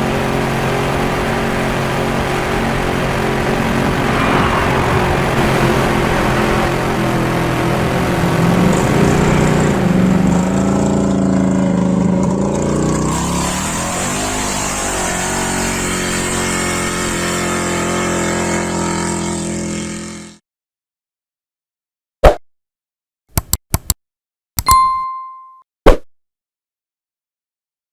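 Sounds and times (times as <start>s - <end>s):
dune buggy engine running: 0.0s - 20.4s.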